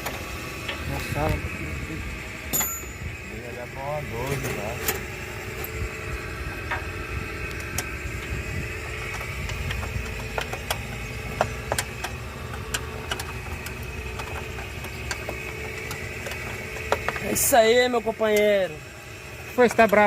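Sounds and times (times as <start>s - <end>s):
diesel engine running: 0.0s - 20.0s
engine high whine: 0.0s - 20.0s.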